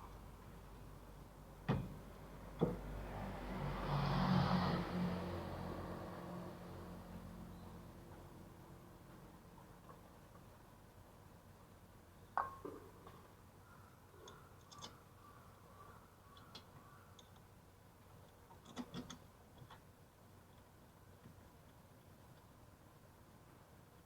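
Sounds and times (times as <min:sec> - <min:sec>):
low background noise: 0:06.4 - 0:24.0.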